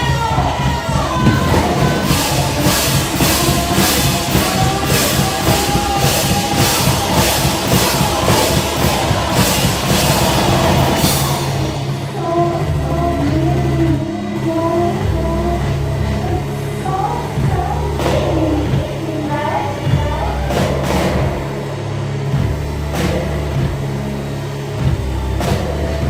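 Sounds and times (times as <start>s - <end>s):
bass and synth drone: 0.0s - 26.0s
hard crashing beat: 0.9s - 13.0s
live rock band playing: 1.1s - 12.8s.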